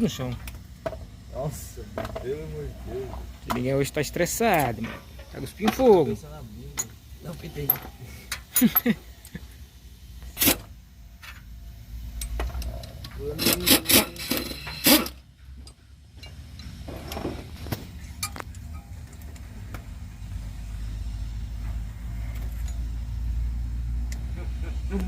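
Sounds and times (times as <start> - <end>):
metal tools clanking: 3.5 - 9.0.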